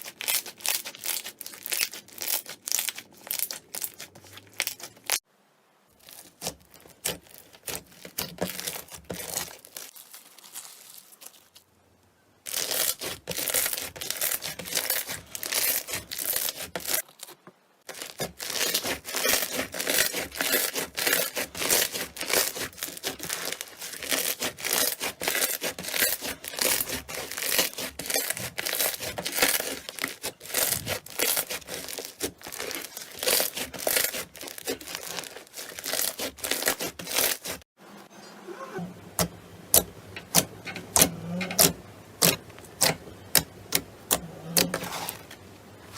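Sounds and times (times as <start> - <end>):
slime squeezed with wet crackling: 0.0 - 5.2, 12.5 - 37.6.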